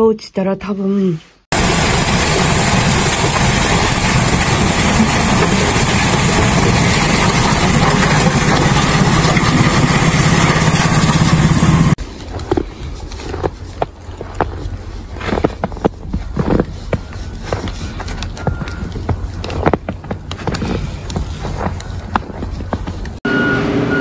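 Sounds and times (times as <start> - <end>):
engine running loudly: 1.5 - 12.0.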